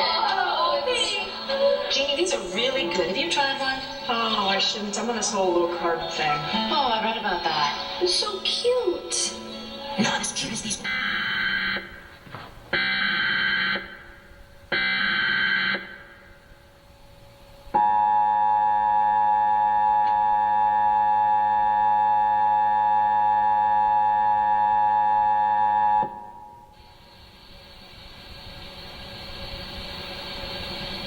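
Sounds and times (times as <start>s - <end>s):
screeching digital header bursts: 10.3s - 12.1s, 12.8s - 16.2s.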